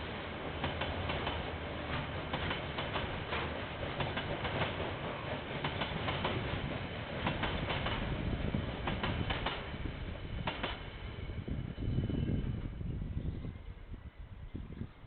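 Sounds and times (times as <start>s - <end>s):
train wheels clattering on rails: 0.0s - 11.0s
low train rumble: 0.0s - 15.0s.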